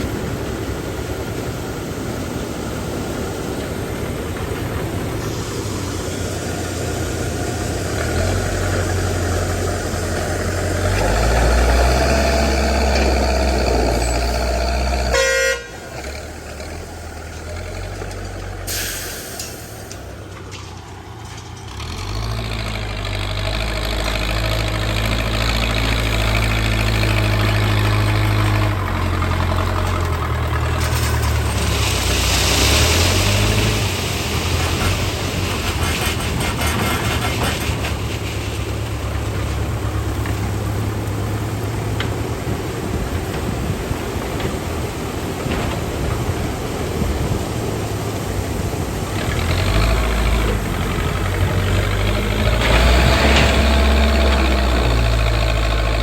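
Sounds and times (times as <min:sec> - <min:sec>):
diesel engine drone: 0:00.0 - 0:56.0
short pitched toot: 0:14.1 - 0:15.8.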